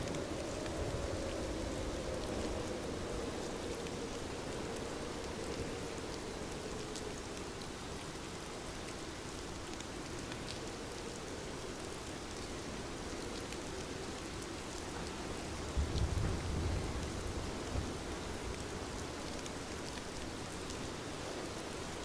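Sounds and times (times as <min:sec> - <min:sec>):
steady rain hiss: 0:00.0 - 0:22.0.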